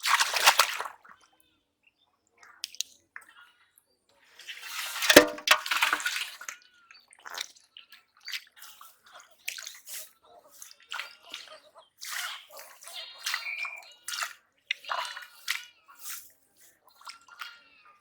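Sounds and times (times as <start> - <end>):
shallow water splashing: 5.0 - 6.2
water drips: 5.1 - 6.1.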